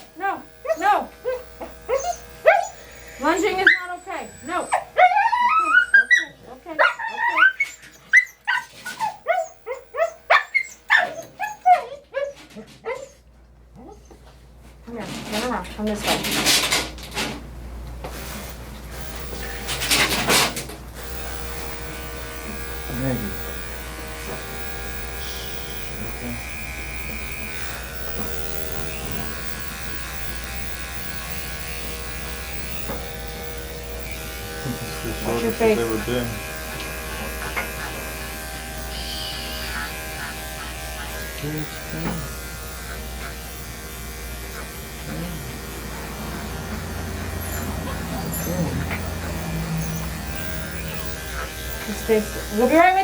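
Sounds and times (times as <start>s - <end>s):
electric clippers buzzing: 0.0s - 11.7s, 18.0s - 53.0s
dog barking and yipping: 0.6s - 13.2s, 39.0s - 42.2s, 45.9s - 52.9s.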